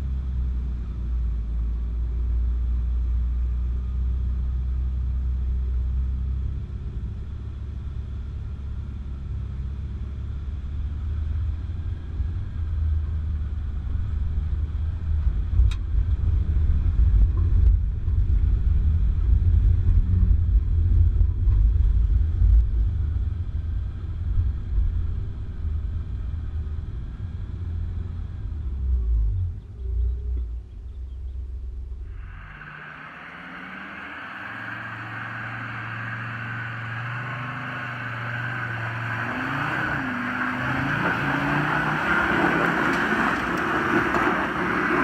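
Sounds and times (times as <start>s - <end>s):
vehicle engine and road rumble: 0.0s - 45.0s.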